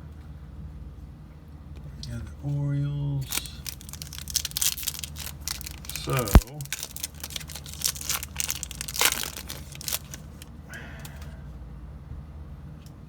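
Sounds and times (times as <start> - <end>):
low room hum: 0.0 - 13.0
cards being handled: 3.2 - 10.5
foil wrapper crinkling: 3.2 - 10.6.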